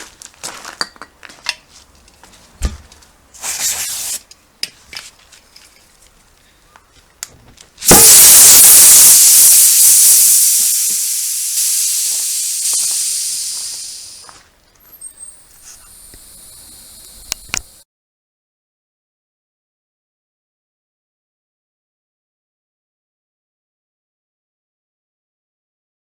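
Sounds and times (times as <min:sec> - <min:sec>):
compressed air hissing: 0:03.4 - 0:04.2, 0:07.8 - 0:14.3, 0:15.0 - 0:17.8.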